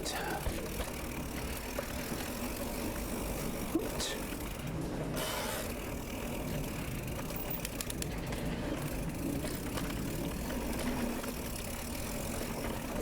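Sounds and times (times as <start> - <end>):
bike tyre and frame rumble: 0.0 - 13.0.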